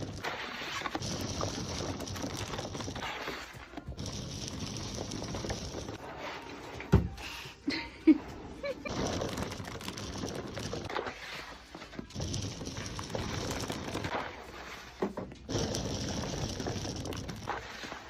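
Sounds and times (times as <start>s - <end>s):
plastic packaging crinkling: 0.0s - 6.0s, 8.9s - 11.1s.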